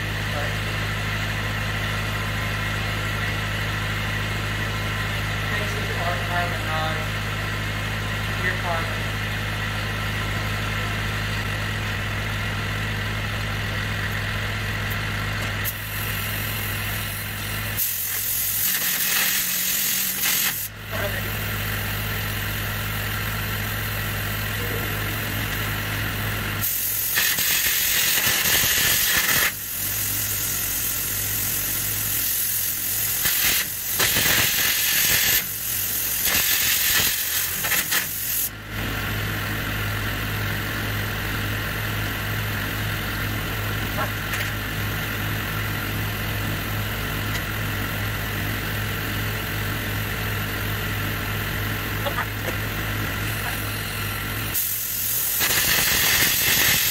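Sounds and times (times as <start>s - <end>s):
welding machine hum: 0.0s - 56.9s
loud harsh arc hissing: 11.2s - 40.3s, 41.0s - 56.9s.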